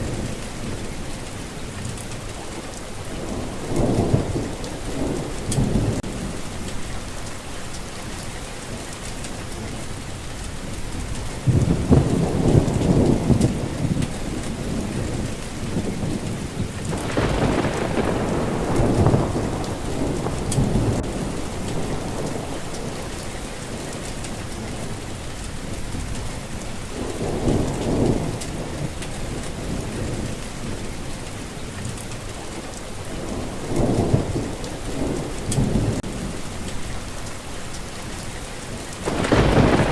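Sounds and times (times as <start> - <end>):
steady rain: 0.0 - 39.9
thunder rumbling: 0.0 - 39.9.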